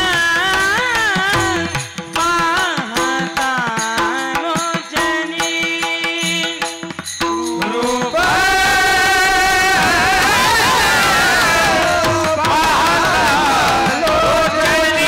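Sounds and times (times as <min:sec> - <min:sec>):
person singing: 0:00.0 - 0:06.7, 0:07.5 - 0:15.0
tabla strokes: 0:00.0 - 0:15.0
cymbal-like jingling: 0:05.5 - 0:09.4.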